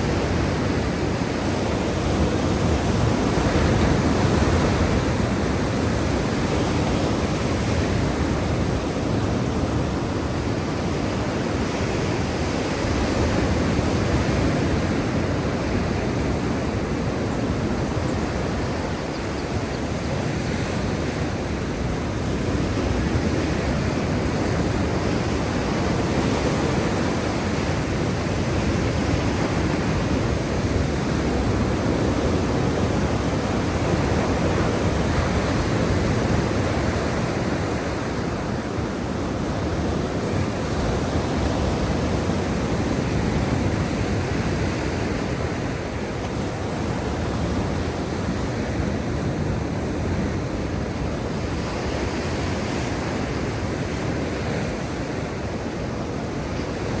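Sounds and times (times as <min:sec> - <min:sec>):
sea waves breaking on shore: 0:00.0 - 0:57.0.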